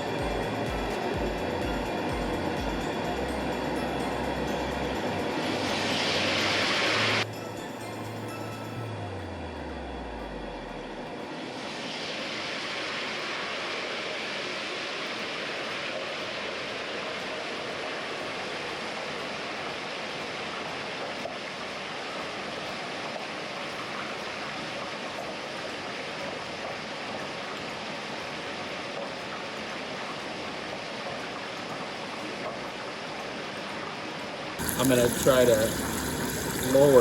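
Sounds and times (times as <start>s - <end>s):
hot oil hissing and bubbling: 0.0s - 8.6s, 11.6s - 18.0s, 34.6s - 37.0s.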